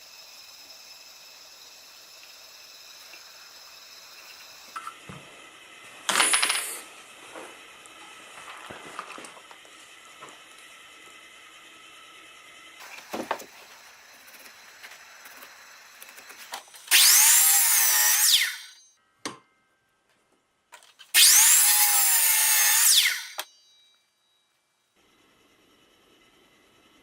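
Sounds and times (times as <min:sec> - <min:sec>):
electric drill boring into wood: 0:12.8 - 0:18.7, 0:21.2 - 0:23.5.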